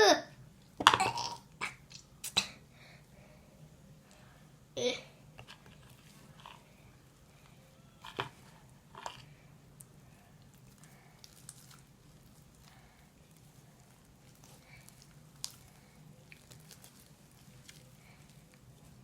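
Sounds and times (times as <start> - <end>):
slime squelching: 8.0 - 19.0.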